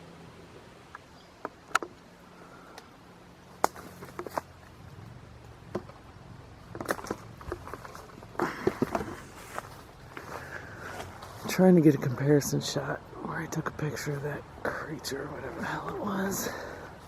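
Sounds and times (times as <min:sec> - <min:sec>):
footsteps snapping twigs and leaves: 0:03.5 - 0:04.8.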